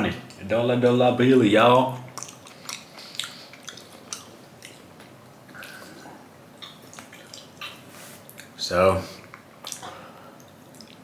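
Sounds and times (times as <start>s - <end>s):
person chewing food: 2.0s - 8.6s, 9.2s - 11.0s.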